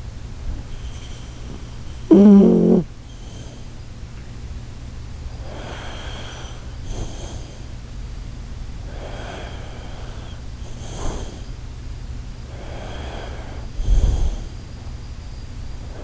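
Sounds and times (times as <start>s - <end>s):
dog snoring: 0.6s - 3.8s, 5.4s - 7.8s, 8.8s - 11.6s, 12.4s - 14.7s.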